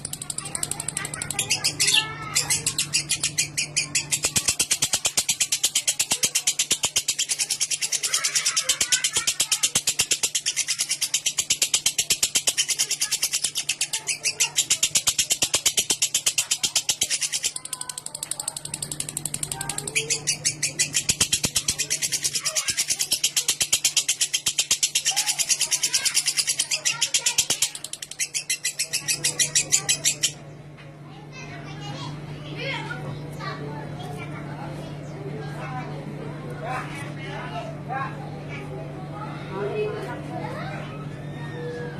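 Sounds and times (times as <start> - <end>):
bird chattering rapidly: 0.0 - 30.5.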